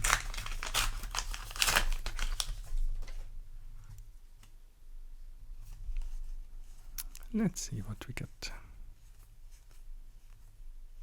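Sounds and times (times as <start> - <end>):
paper pack tearing and crinkling: 0.0 - 2.8.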